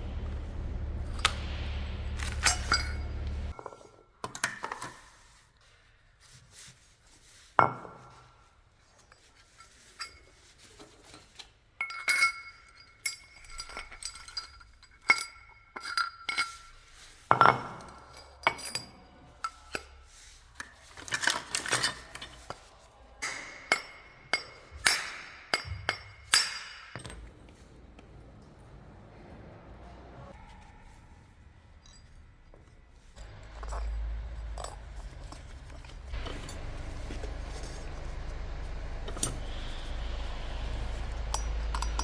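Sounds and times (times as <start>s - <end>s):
metal tools clinking and knocking: 2.2s - 5.0s, 9.0s - 27.5s, 31.8s - 40.0s, 41.0s - 42.0s.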